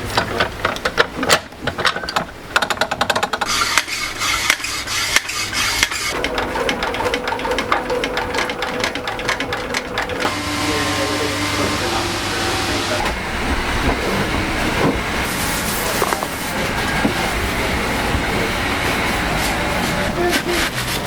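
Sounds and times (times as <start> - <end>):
sewing machine stitching: 3.4 - 11.3.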